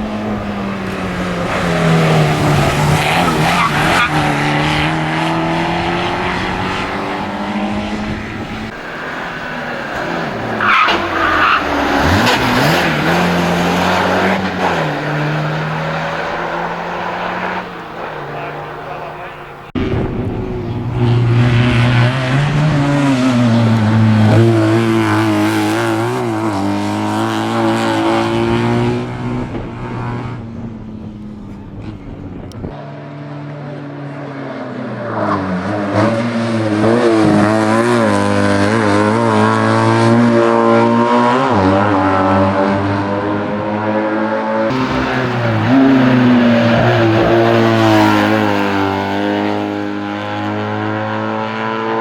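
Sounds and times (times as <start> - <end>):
racing car engines revving: 0.0 - 52.0.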